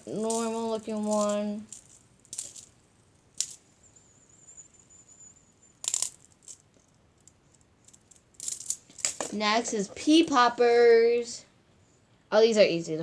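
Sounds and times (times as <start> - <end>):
plastic toys clattering: 0.0 - 3.8, 5.8 - 10.0.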